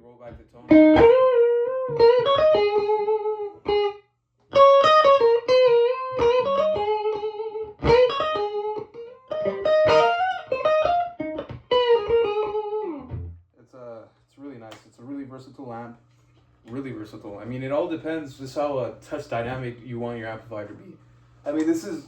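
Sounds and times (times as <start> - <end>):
electric guitar lead phrases: 0.7 - 13.4.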